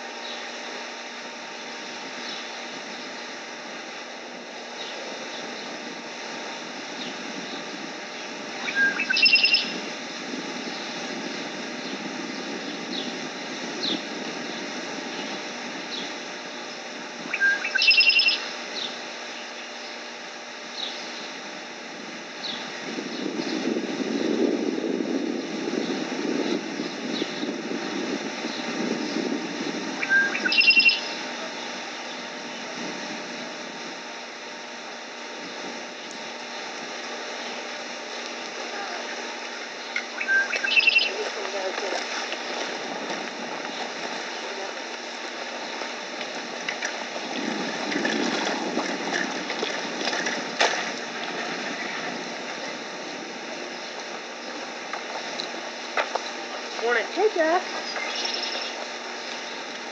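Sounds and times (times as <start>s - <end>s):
low outdoor rumble: 0.0s - 59.9s
bird chirping: 8.6s - 9.8s, 17.3s - 18.9s, 30.0s - 31.2s, 39.8s - 41.2s, 57.8s - 58.8s
lake water lapping and splashing: 39.0s - 52.6s.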